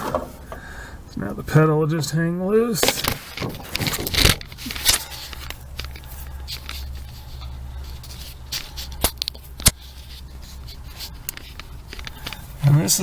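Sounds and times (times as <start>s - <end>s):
metal parts scraping and knocking: 2.8s - 12.6s.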